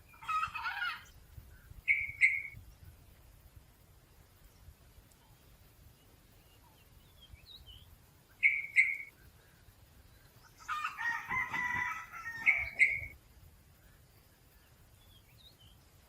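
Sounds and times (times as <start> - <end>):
sharp loud bird notes: 1.8 - 2.6, 6.5 - 9.2, 10.4 - 13.2
rooster crowing: 10.6 - 13.1.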